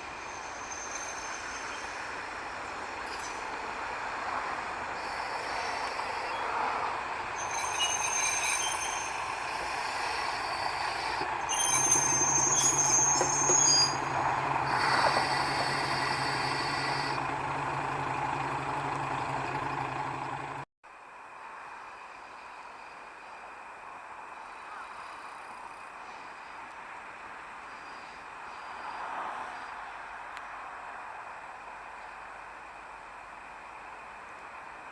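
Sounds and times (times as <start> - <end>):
high wheel squeal: 0.0 - 3.7, 4.9 - 20.0
diesel engine hum: 1.8 - 20.7.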